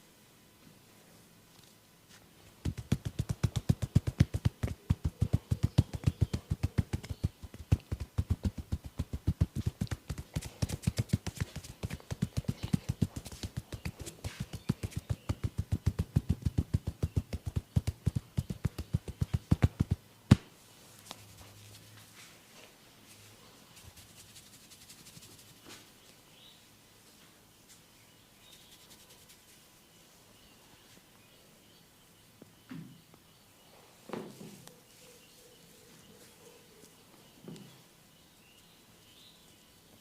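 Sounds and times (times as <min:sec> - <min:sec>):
hands slapping in massage: 0:02.6 - 0:20.5.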